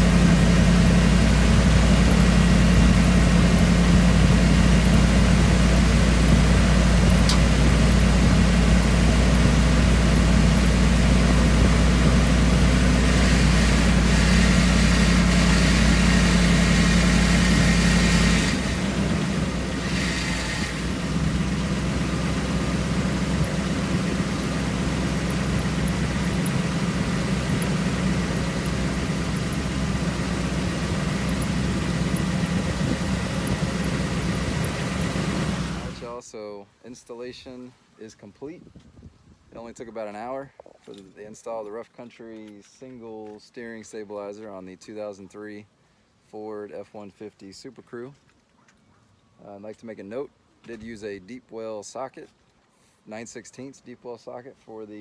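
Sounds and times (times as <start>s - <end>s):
truck engine idling: 0.0s - 36.1s.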